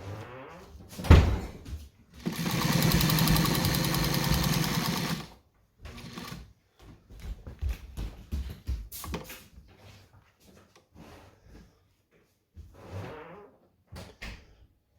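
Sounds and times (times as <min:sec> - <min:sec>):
sewing machine running: 0:02.2 - 0:06.4.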